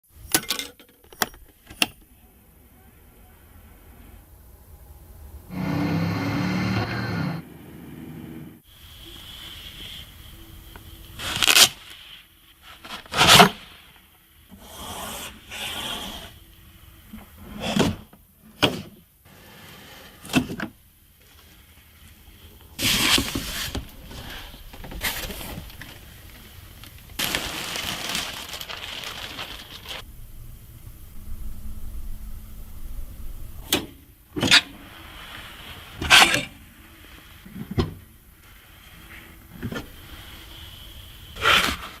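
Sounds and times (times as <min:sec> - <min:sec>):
scraping and rustling: 0:19.3 - 0:33.6
brief low hum: 0:30.0 - 0:34.2.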